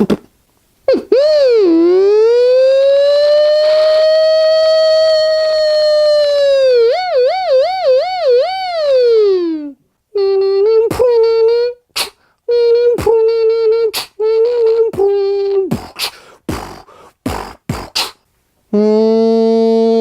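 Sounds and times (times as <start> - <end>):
beatbox drum hits: 0.0 - 0.3, 10.9 - 11.3, 11.9 - 12.3, 13.0 - 14.2, 15.0 - 18.2
steady buzzy tone: 0.0 - 11.9
hummed tune: 0.9 - 11.8, 12.5 - 16.0.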